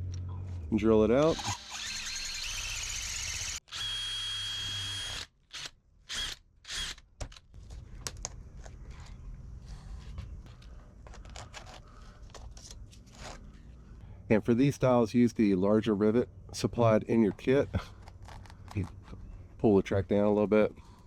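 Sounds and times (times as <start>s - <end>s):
power drill whining: 1.2s - 7.0s
faint clicks and handling noise: 7.3s - 13.8s, 17.3s - 19.5s.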